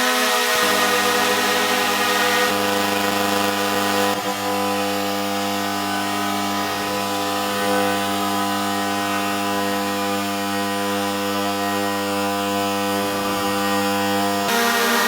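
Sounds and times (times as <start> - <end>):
drone propellers humming: 0.6 - 5.2.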